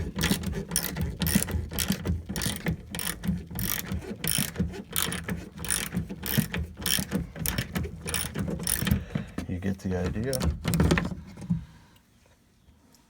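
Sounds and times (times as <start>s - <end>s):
ratchet wrench clicking: 0.2s - 9.0s.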